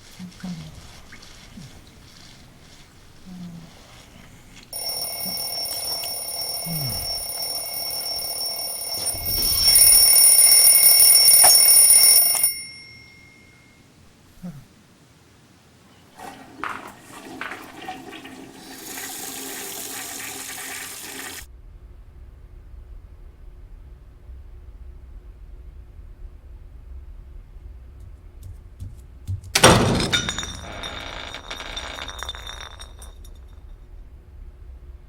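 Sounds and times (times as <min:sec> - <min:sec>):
alarm clock ringing: 0:04.8 - 0:13.6.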